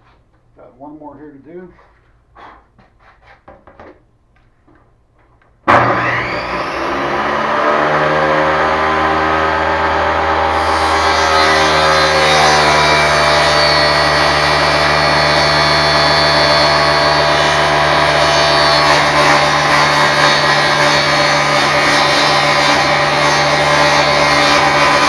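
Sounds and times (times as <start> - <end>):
high saw whine: 5.7 - 25.0
table saw motor hum: 5.7 - 25.0.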